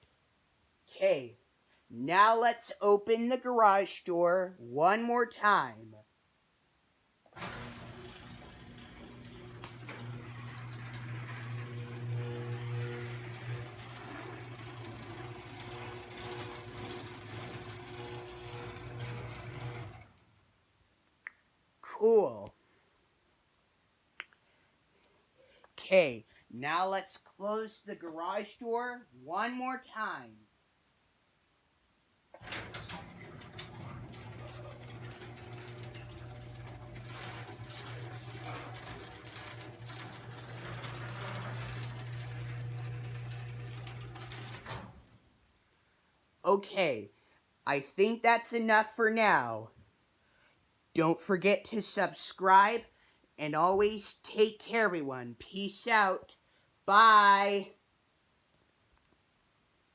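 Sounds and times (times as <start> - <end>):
garage door opener motor hum: 7.3 - 20.4, 32.4 - 45.3
chain drive rattling: 7.4 - 20.2, 32.4 - 44.9.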